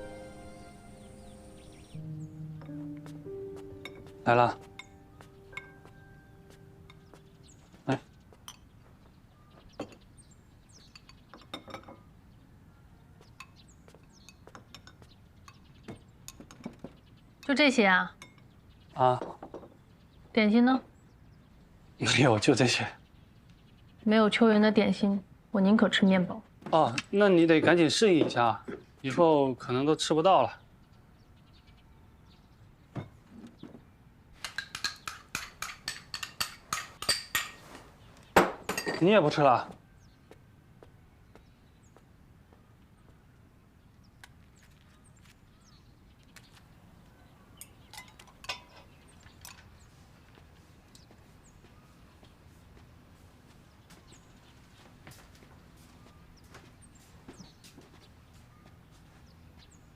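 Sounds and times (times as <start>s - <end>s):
dishes and cutlery clinking: 8.4s - 8.8s, 10.8s - 12.0s, 13.4s - 17.0s, 34.4s - 37.8s, 38.4s - 39.4s, 47.7s - 49.7s
utensils clinking on dishes: 34.4s - 37.8s, 38.6s - 39.1s, 47.7s - 49.7s.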